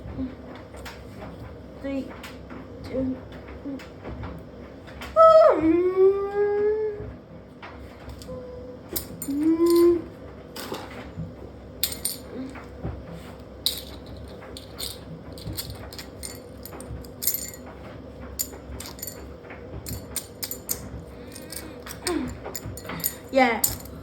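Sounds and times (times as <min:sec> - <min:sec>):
steady hum: 0:11.4 - 0:24.0
metallic clattering and knocks: 0:11.8 - 0:12.7, 0:13.7 - 0:24.0.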